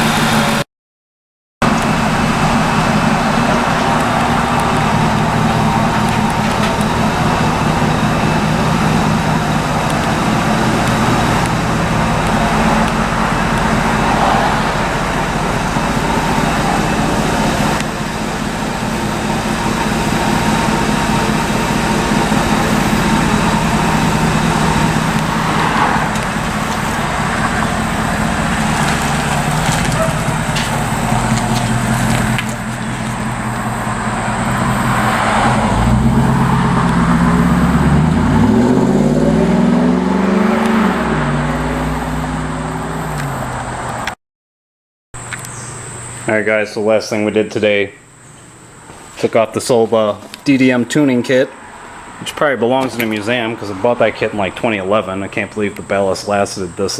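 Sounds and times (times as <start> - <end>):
engine running: 0.0 - 0.6, 1.6 - 44.2.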